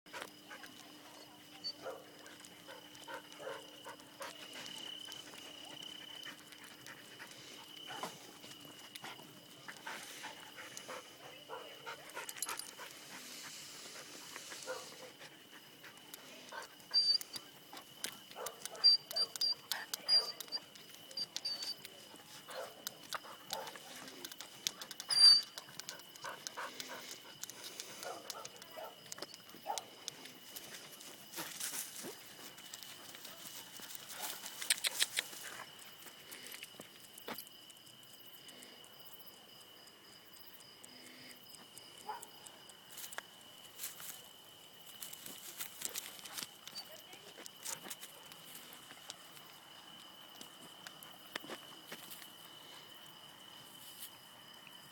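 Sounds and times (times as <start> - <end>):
faint dog noises: 0.1 - 36.6.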